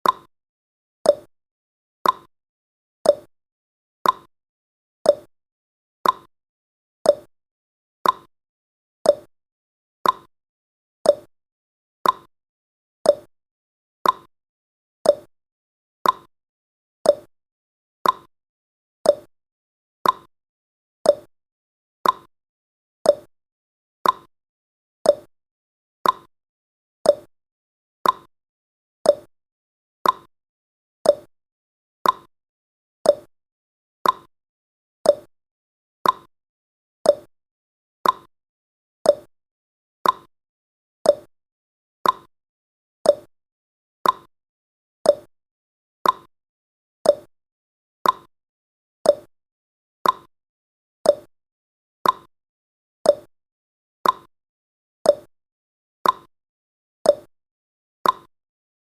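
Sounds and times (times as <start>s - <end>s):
timer ticking: 0.0s - 0.3s, 1.1s - 1.3s, 2.0s - 2.3s, 3.1s - 3.3s, 4.0s - 4.3s, 5.1s - 5.3s, 6.0s - 6.3s, 7.1s - 7.3s, 8.0s - 8.3s, 9.1s - 9.3s, 10.0s - 10.3s, 11.1s - 11.3s, 12.0s - 12.3s, 13.1s - 13.3s, 14.0s - 14.3s, 15.1s - 15.3s, 16.0s - 16.3s, 17.1s - 17.3s, 18.0s - 18.3s, 19.1s - 19.3s, 20.0s - 20.3s, 21.1s - 21.3s, 22.0s - 22.3s, 23.1s - 23.3s, 24.0s - 24.3s, 25.1s - 25.3s, 26.0s - 26.3s, 27.1s - 27.3s, 28.0s - 28.3s, 29.1s - 29.3s, 30.0s - 30.3s, 31.0s - 31.3s, 32.0s - 32.3s, 33.1s - 33.3s, 34.0s - 34.3s, 35.1s - 35.3s, 36.0s - 36.3s, 37.1s - 37.3s, 38.0s - 38.3s, 39.1s - 39.3s, 40.0s - 40.3s, 41.1s - 41.3s, 42.0s - 42.3s, 43.1s - 43.3s, 44.0s - 44.3s, 45.1s - 45.3s, 46.0s - 46.3s, 47.0s - 47.3s, 48.0s - 48.3s, 49.1s - 49.3s, 50.0s - 50.3s, 51.1s - 51.3s, 52.0s - 52.3s, 53.1s - 53.3s, 54.0s - 54.3s, 55.1s - 55.3s, 56.0s - 56.3s, 57.1s - 57.3s, 58.0s - 58.3s.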